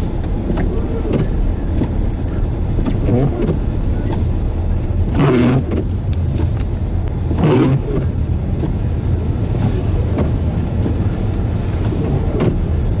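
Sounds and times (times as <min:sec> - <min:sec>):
vehicle driving on road: 0:00.0 - 0:13.0.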